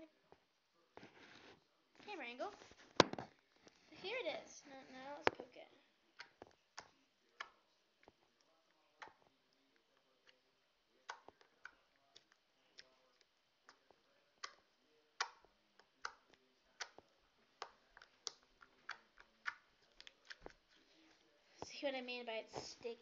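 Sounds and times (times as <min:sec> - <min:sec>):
fingers poking sticky slime: 0:11.0 - 0:20.7.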